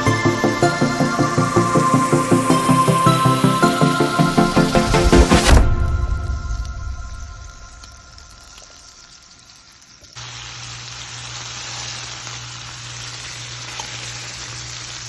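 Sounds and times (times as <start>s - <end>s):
low hum: 0.0s - 8.9s
food sizzling in frying pan: 7.2s - 15.0s.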